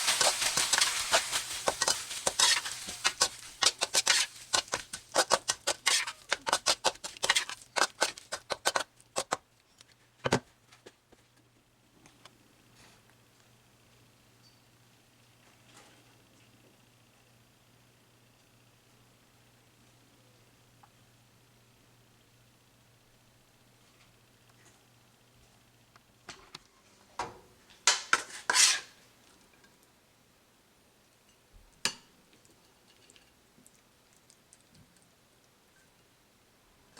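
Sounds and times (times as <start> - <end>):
utensil tapping against a pan: 0.1 - 9.4.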